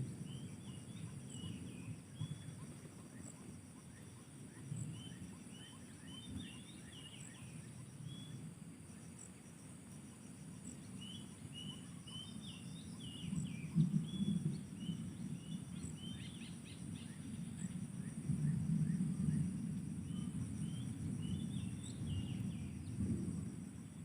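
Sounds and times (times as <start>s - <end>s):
songbird chirping: 10.6s - 17.8s.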